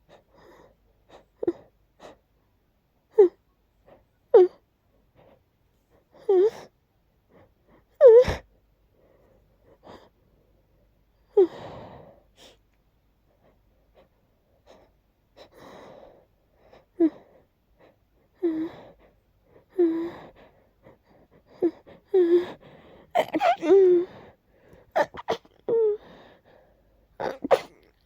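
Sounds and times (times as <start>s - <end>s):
person sneezing: 23.2s - 23.8s, 27.2s - 27.9s.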